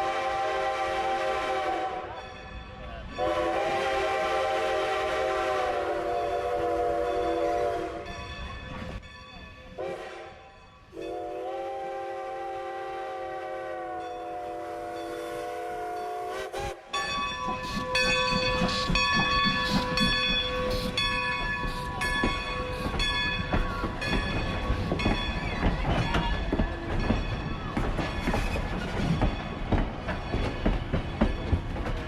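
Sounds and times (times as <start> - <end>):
train whistle: 0.0 - 2.2, 3.2 - 8.2, 9.8 - 17.0
train running with clicking: 0.0 - 32.0.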